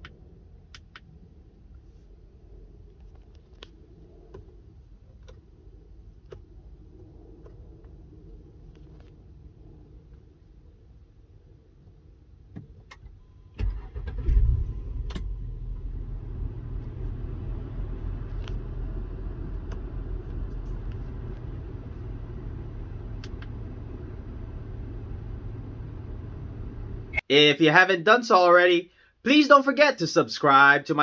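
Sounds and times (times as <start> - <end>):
ignition clicks: 12.5 - 27.2
car engine cranking: 12.9 - 27.2
car engine idling: 13.2 - 27.2.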